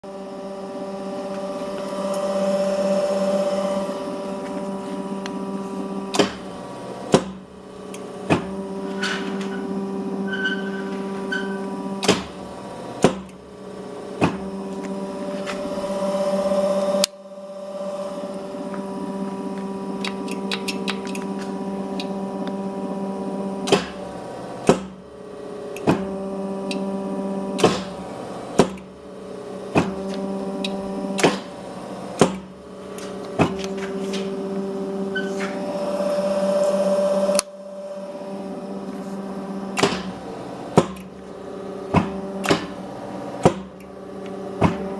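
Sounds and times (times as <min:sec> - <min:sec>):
press motor humming: 0:00.0 - 0:44.9
cutting beam clacking: 0:06.1 - 0:09.9, 0:10.5 - 0:13.4, 0:23.6 - 0:25.0, 0:27.5 - 0:28.9, 0:29.7 - 0:31.6, 0:32.2 - 0:34.4, 0:39.7 - 0:44.9.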